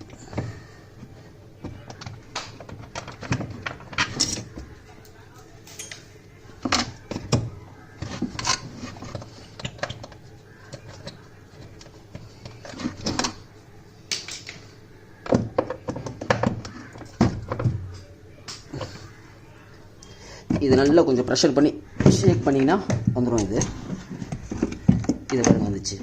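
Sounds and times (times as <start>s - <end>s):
hand tools clicking and scraping: 0.0s - 13.5s.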